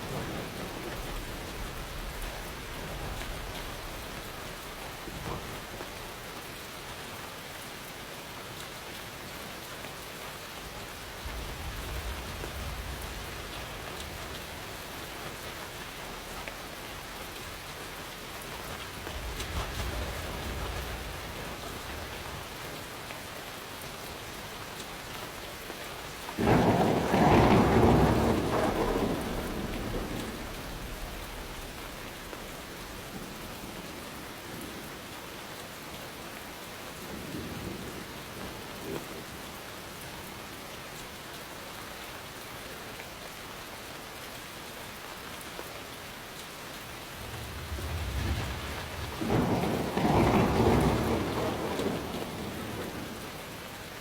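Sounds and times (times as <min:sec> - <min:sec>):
thunder rumbling: 0:00.0 - 0:06.2, 0:10.6 - 0:34.8, 0:46.8 - 0:54.0
steady rain: 0:00.0 - 0:54.0.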